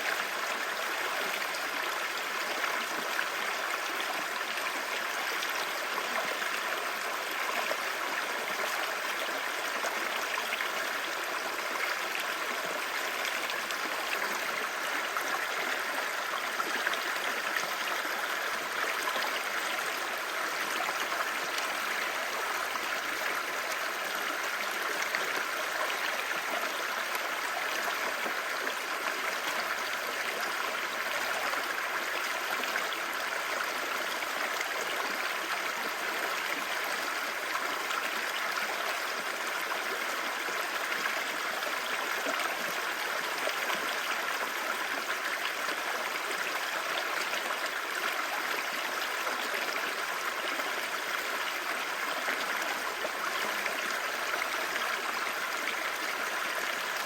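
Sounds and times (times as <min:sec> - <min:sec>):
stream babbling over rocks: 0:00.0 - 0:57.0.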